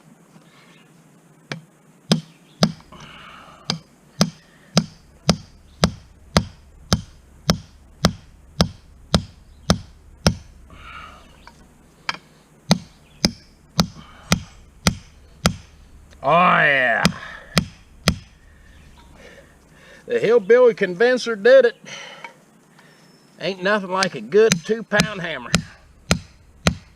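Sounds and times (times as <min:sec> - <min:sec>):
hammer striking steel rebar: 0:03.7 - 0:10.5, 0:12.7 - 0:15.8, 0:17.0 - 0:18.4, 0:24.5 - 0:26.9.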